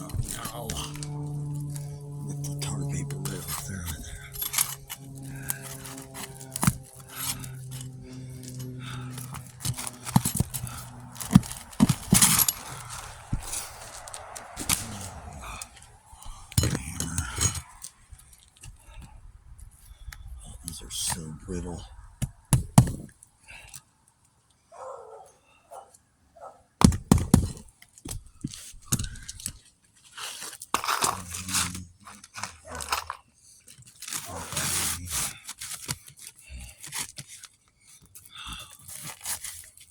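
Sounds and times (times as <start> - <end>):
tearing scrape: 0.0 - 17.8, 33.8 - 37.6, 38.3 - 39.9
steady low hum: 0.0 - 23.1
roof shingles cracking and knocking: 4.5 - 15.0, 26.8 - 29.6
sharp knocks and thunks: 22.2 - 23.1, 26.8 - 28.2.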